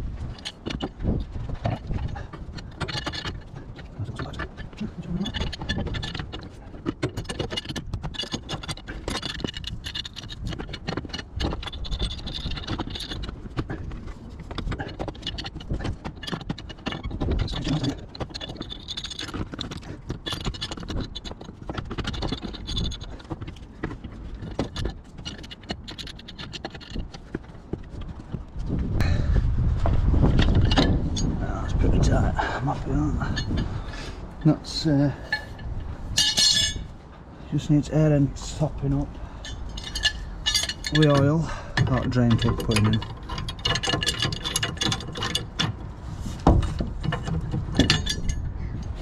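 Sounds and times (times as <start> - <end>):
hand tools clinking on metal: 33.1 - 36.9, 38.9 - 48.5.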